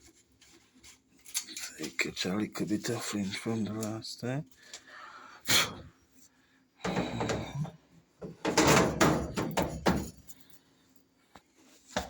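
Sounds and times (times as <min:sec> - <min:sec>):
dryer parts knocking and scraping: 0:06.8 - 0:10.4.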